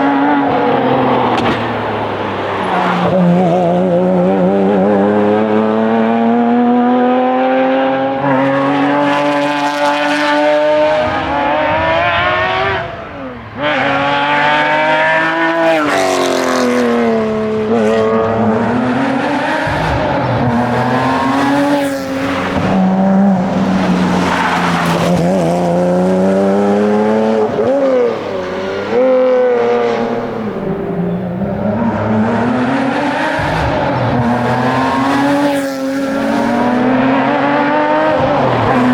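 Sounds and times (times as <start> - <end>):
racing car engine revving: 0.0 - 38.9.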